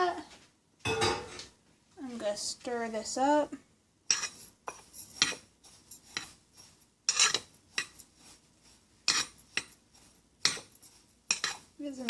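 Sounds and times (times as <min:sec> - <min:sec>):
utensil scraping and clinking bowl: 0:04.1 - 0:12.0.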